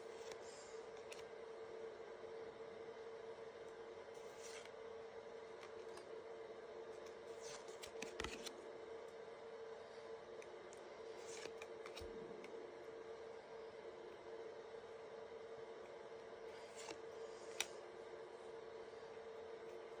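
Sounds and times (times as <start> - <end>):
steady low hum: 0.0 - 20.0
trading cards rustling and clicking: 4.2 - 4.7, 7.0 - 8.6, 11.1 - 12.6, 16.5 - 17.8.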